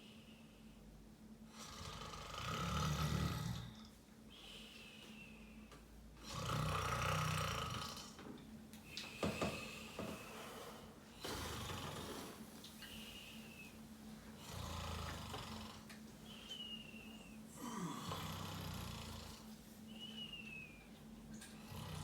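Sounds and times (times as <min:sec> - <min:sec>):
rasping snores: 0:01.5 - 0:03.8, 0:06.2 - 0:08.2, 0:10.3 - 0:12.4, 0:14.4 - 0:15.9, 0:17.6 - 0:19.5, 0:21.6 - 0:22.0
thin whistle on the breath: 0:16.3 - 0:17.3, 0:19.9 - 0:20.8.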